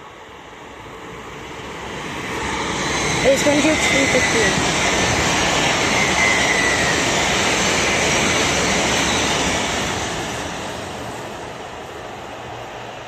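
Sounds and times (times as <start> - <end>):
train wheels rushing on rails: 0.0 - 13.0
faint high squeal: 5.7 - 7.3.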